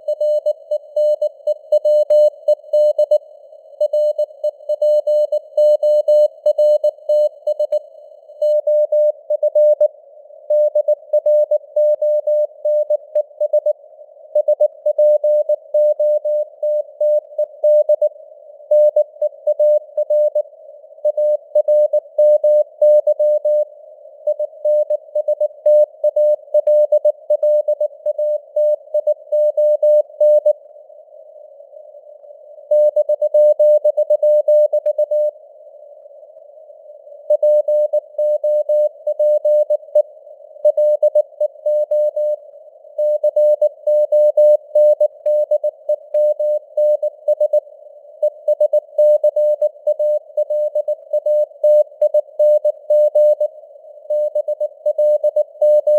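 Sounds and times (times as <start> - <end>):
morse code sine tone: 0.0 - 30.6, 32.5 - 35.4, 37.0 - 55.9.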